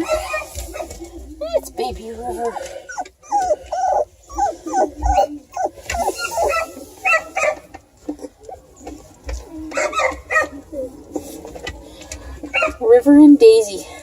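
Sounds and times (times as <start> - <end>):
puppies whimpering and yipping: 2.6 - 12.8.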